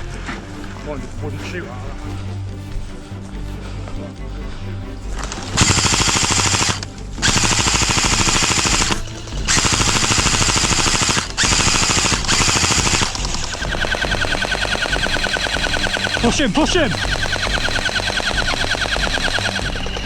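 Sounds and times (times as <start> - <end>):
airsoft guns firing bursts: 5.2 - 20.0.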